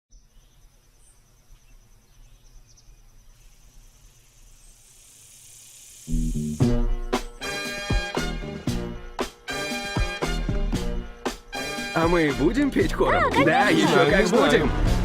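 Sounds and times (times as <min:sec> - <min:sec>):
crickets trilling: 0:00.1 - 0:07.8
loud music with bass line: 0:06.6 - 0:12.2, 0:12.8 - 0:15.0.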